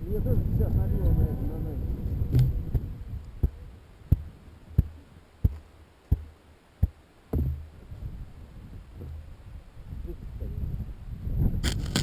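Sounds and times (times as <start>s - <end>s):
low muffled thumps: 1.9s - 8.2s.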